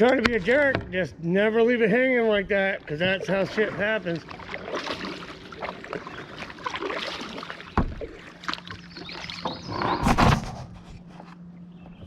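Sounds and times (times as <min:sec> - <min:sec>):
paddle knocking against hull: 0:00.0 - 0:01.0, 0:02.2 - 0:10.7
paddle strokes in water: 0:01.9 - 0:11.3.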